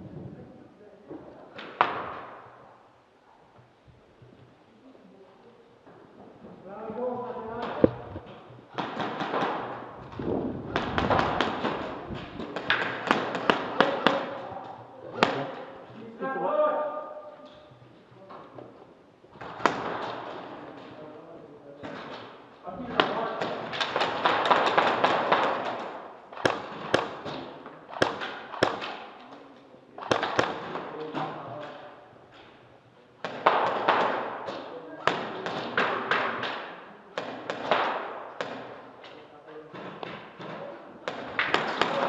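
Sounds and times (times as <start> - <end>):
airsoft guns firing: 1.6 - 2.6, 7.6 - 15.9, 19.4 - 21.0, 21.8 - 29.2, 30.0 - 32.6, 33.2 - 39.0, 39.8 - 42.0.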